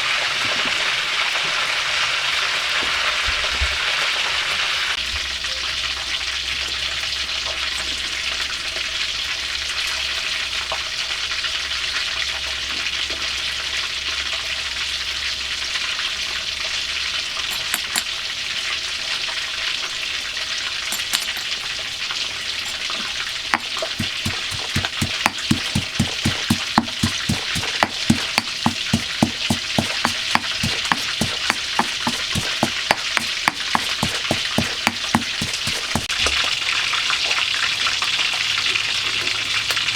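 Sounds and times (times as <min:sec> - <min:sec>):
quick knocks: 0:23.6 - 0:36.2.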